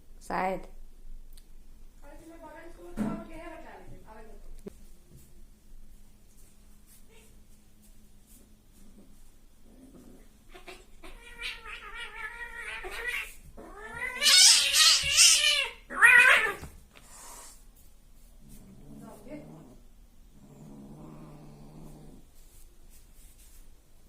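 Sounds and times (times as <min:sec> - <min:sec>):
cats yowling in a fight: 0:10.0 - 0:16.8
cat screech: 0:11.2 - 0:16.7.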